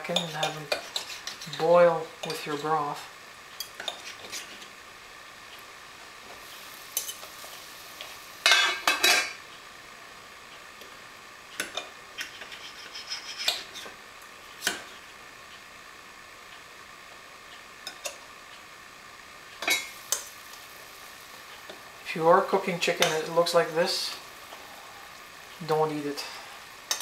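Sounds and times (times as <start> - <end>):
faint steady hiss: 0.0 - 27.0
utensils clattering on pots: 8.4 - 9.4.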